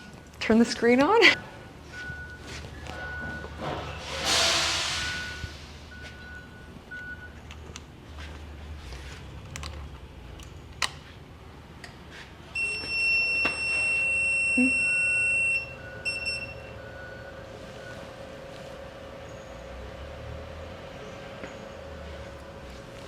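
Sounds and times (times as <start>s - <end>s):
short beeps: 5.0s - 7.4s, 12.6s - 18.0s.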